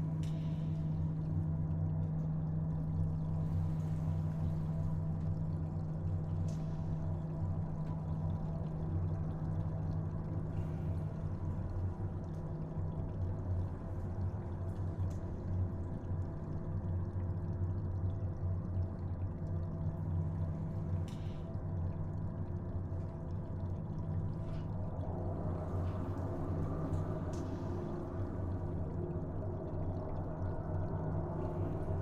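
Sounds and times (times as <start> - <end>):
faint water drips: 0.0 - 32.0
low cave drone: 0.0 - 32.0.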